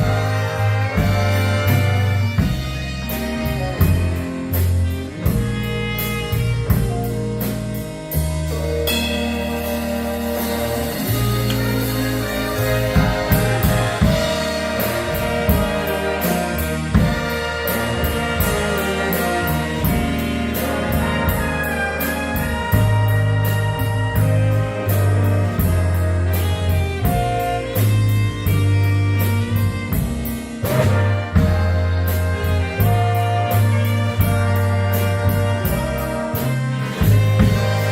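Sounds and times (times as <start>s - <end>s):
big band playing: 0.0s - 37.9s
cymbal strokes: 8.5s - 20.6s.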